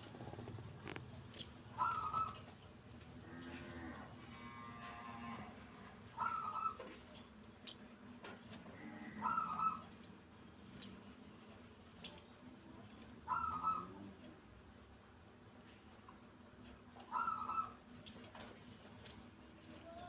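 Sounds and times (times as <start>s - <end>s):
high-pitched bird chirps: 1.4s - 2.3s, 7.7s - 7.9s, 10.8s - 11.1s, 12.0s - 12.3s, 18.1s - 18.3s.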